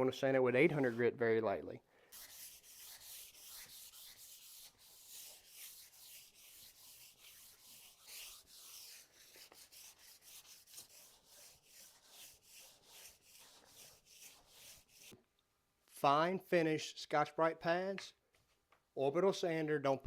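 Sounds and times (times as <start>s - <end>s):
sandpaper rubbing on wood: 2.1s - 15.1s.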